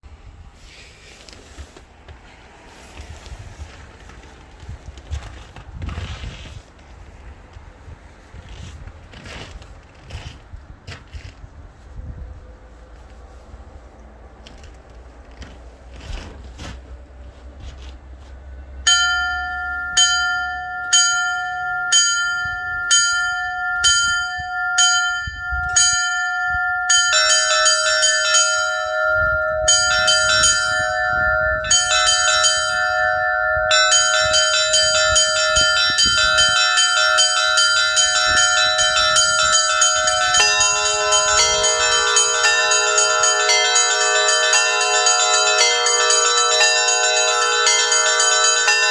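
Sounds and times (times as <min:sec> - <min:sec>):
church bells pealing: 0:18.8 - 0:48.9
deep bells ringing: 0:18.8 - 0:48.9
single bell striking: 0:18.9 - 0:48.9.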